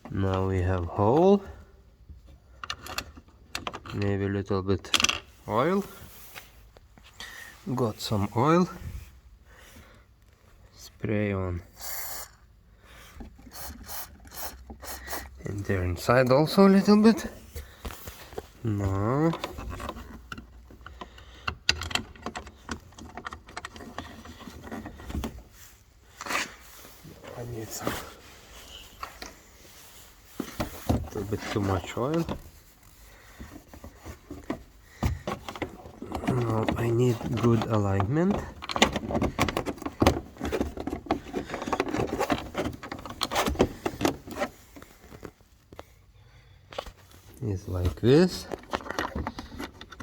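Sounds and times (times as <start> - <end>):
tools and parts clicking and knocking: 2.2 - 4.2, 4.8 - 5.4, 19.2 - 25.4, 30.4 - 45.8, 48.1 - 50.0.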